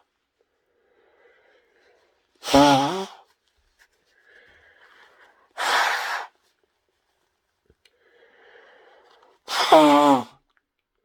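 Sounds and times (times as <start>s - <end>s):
faint breath: 0.6s - 3.1s, 4.1s - 6.3s, 7.9s - 9.2s
woman blowing her nose: 2.4s - 3.2s, 5.6s - 6.3s, 9.5s - 10.3s.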